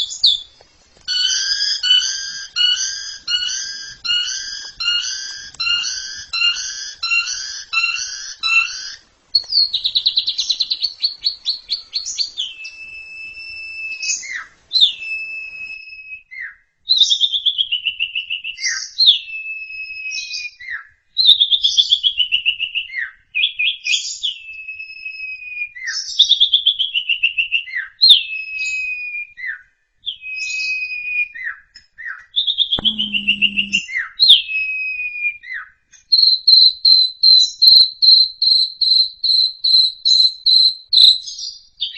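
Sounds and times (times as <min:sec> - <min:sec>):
starling singing clear whistles: 0:00.0 - 0:17.1, 0:32.8 - 0:35.4, 0:36.1 - 0:41.5
brief low hum: 0:32.8 - 0:33.8.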